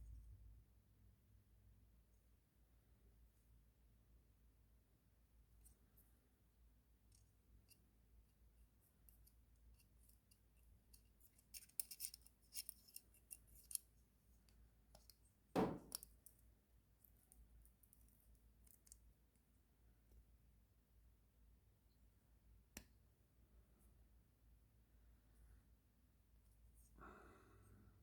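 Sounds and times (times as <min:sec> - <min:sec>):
metal clicks and scrapes: 0:09.2 - 0:13.8
loud knock: 0:15.6 - 0:15.9.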